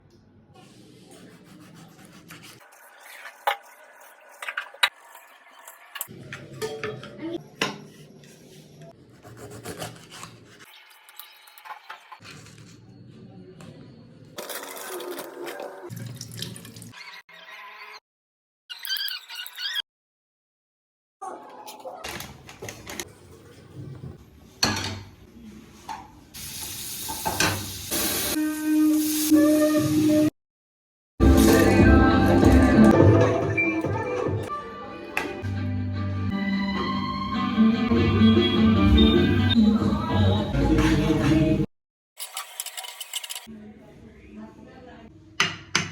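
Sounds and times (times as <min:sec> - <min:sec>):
dishes and utensils clinking: 0:06.0 - 0:07.9, 0:24.6 - 0:25.2
food sizzling in a frying pan: 0:26.4 - 0:29.3.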